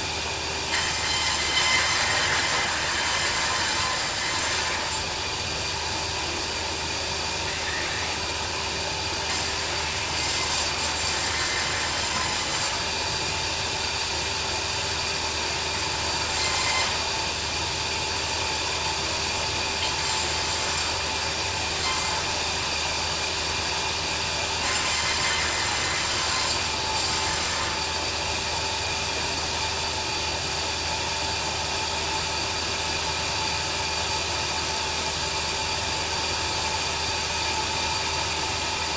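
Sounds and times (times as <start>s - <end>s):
bandsaw cutting timber: 0.0s - 29.5s.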